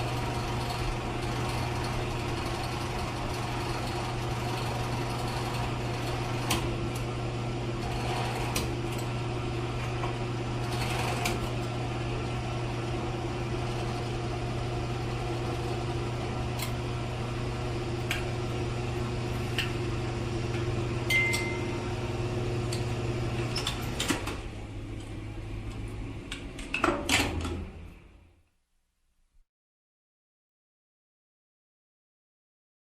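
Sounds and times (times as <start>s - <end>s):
low mechanical hum: 0.0s - 28.6s
short high beep: 21.1s - 21.8s.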